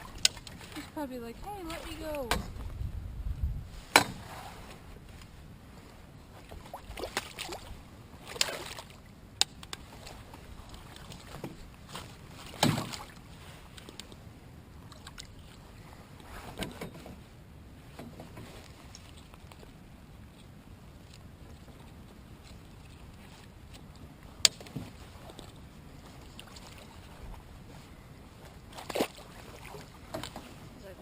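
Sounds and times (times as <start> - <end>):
knocks in a canoe: 2.3 - 2.7, 3.9 - 4.4, 12.5 - 13.1.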